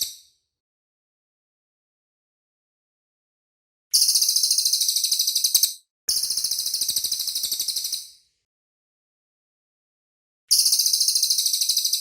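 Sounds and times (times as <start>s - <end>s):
bird singing rapid trills: 10.6s - 12.0s.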